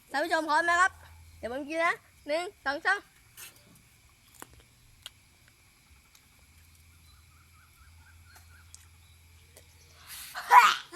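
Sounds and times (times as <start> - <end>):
faint chewing clicks: 4.2 - 6.9.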